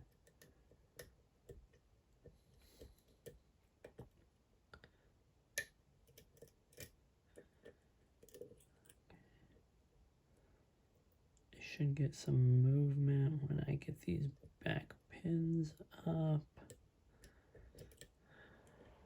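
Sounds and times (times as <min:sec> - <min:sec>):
lock pick clicking: 0:05.6 - 0:07.0.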